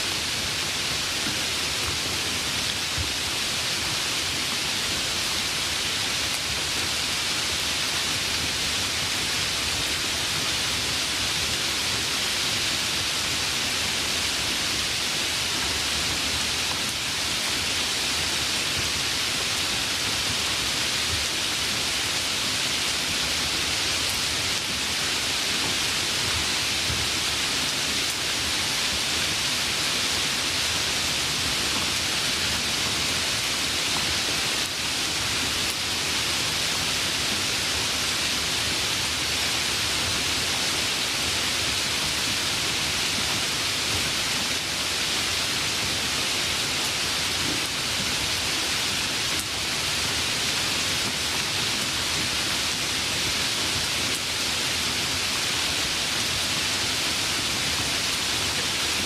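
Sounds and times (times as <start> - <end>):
steady rain hiss: 0.0 - 59.0.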